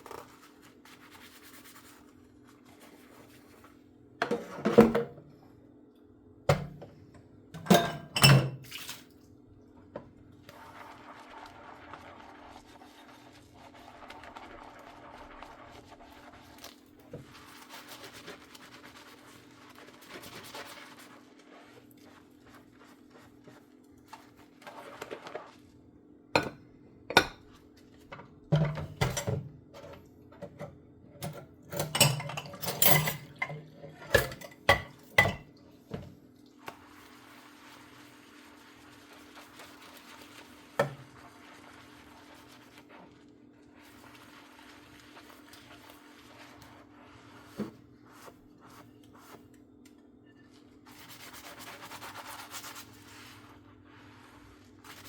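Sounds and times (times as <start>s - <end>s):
dishes and cutlery clattering: 7.6s - 8.6s, 28.5s - 29.4s, 31.2s - 35.5s
washing sounds: 7.6s - 49.6s, 50.5s - 55.0s.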